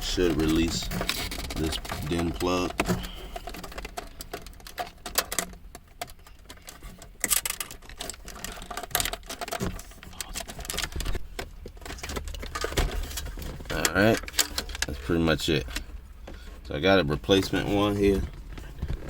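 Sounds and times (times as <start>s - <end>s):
plastic connectors clicking and rattling: 0.0s - 15.1s.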